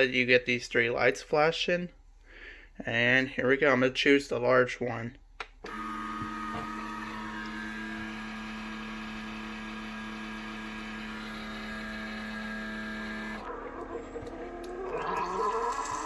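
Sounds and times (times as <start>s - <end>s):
coffee maker pump humming: 5.7s - 13.5s.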